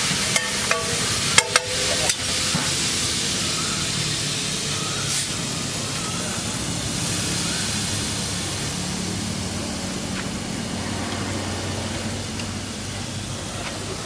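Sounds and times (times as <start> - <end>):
egg sizzling in a pan: 0.0 - 9.0.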